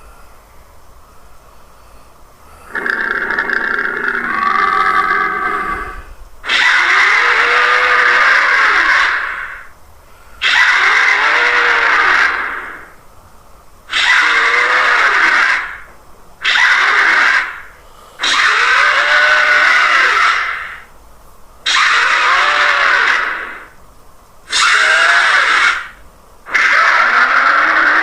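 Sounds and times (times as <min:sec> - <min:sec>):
distorted monster roar: 0:02.7 - 0:09.7, 0:10.4 - 0:13.0, 0:13.9 - 0:20.9, 0:21.7 - 0:23.8, 0:24.5 - 0:28.0.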